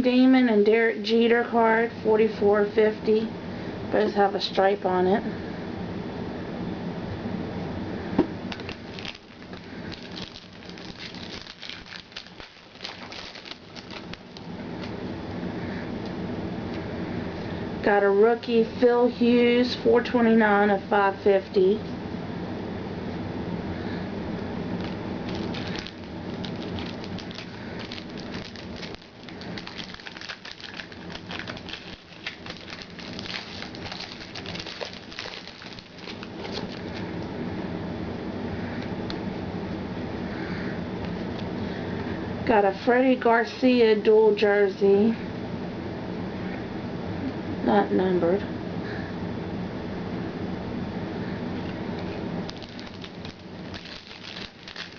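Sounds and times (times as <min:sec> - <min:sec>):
low room hum: 0:00.0 - 0:54.9
card pack wrapper crinkling: 0:08.5 - 0:14.5, 0:24.8 - 0:37.0, 0:52.1 - 0:54.9.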